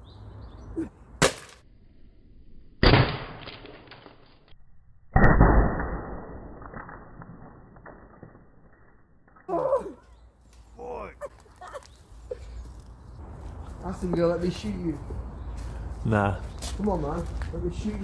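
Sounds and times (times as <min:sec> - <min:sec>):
sharp crack: 0:01.2 - 0:01.6, 0:02.8 - 0:04.4, 0:05.2 - 0:08.5.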